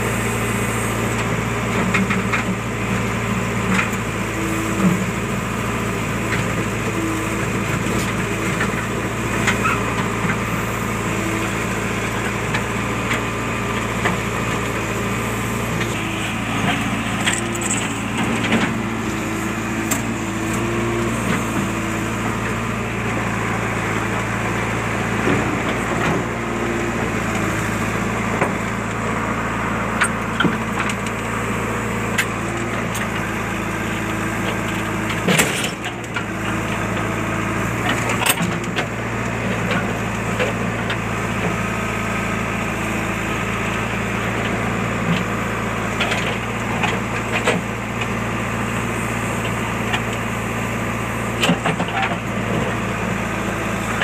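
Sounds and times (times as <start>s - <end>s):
diesel engine running: 0.0s - 54.0s.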